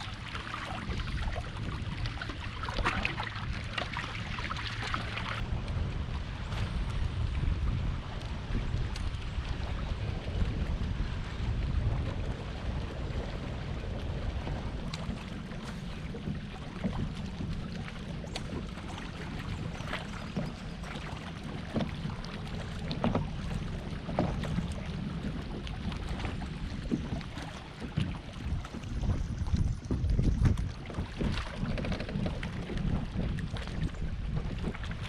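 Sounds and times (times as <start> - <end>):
water against boat: 0.0 - 35.0
wind on microphone: 0.0 - 35.0.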